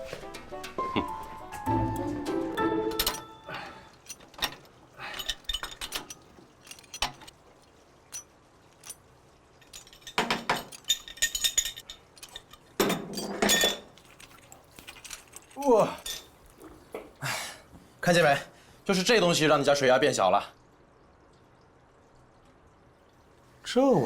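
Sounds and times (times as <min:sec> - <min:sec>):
small hard objects clinking: 0:09.6 - 0:16.4.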